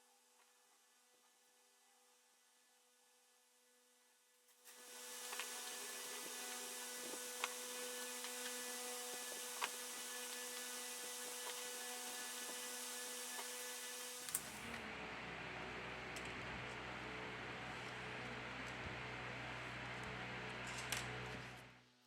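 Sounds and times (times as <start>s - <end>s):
electrical hum and hiss: 4.7s - 21.7s.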